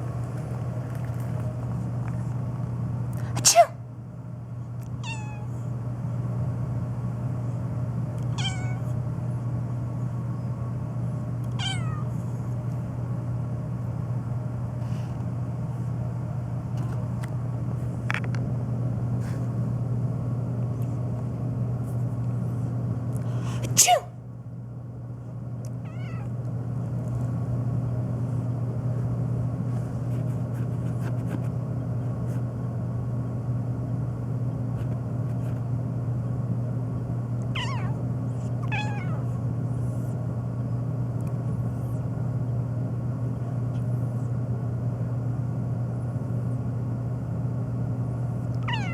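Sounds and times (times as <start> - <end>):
person sneezing: 3.2 - 3.8, 23.5 - 24.2
cat meowing: 5.0 - 5.6, 8.3 - 8.9, 11.5 - 12.1, 25.8 - 26.3, 37.5 - 38.0, 38.6 - 39.4, 48.6 - 48.9.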